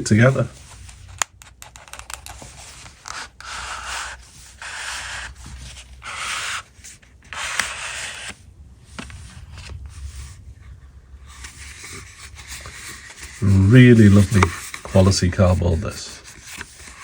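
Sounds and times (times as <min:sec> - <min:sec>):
hands scraping cardboard box: 0:11.4 - 0:17.0.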